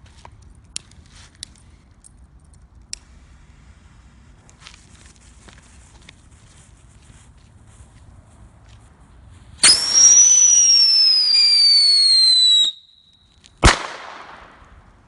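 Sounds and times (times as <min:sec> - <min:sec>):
firework whistle falling in pitch: 0:09.6 - 0:13.2.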